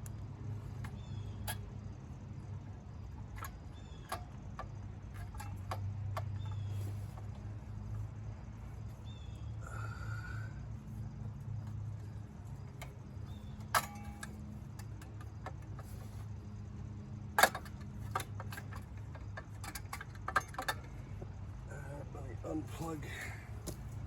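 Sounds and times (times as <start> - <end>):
metal tool clicks and clinks: 3.2 - 7.3, 12.6 - 16.1, 17.4 - 21.1.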